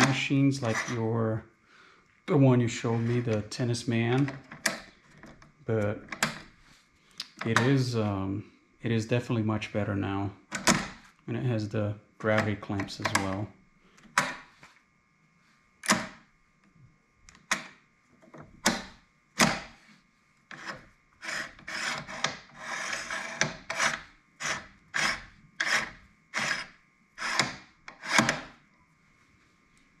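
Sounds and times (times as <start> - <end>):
clamps scraping along metal base: 0.0 - 1.2, 20.5 - 28.4.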